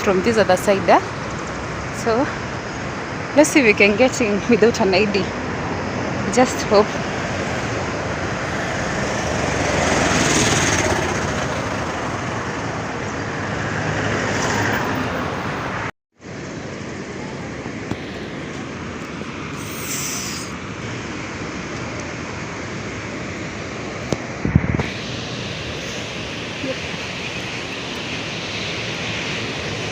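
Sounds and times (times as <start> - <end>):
waterfall roaring: 16.4 - 29.9.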